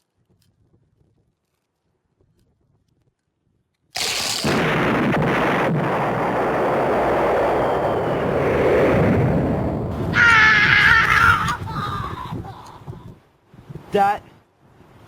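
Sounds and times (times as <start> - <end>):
explosion rumble: 4.0 - 10.4.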